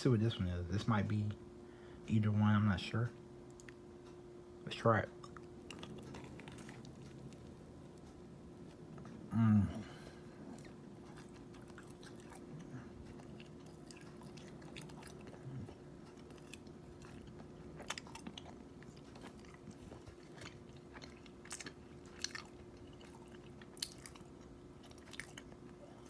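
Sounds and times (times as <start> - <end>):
steady low hum: 0.0 - 26.0
faint chewing: 3.4 - 4.2, 5.2 - 26.0.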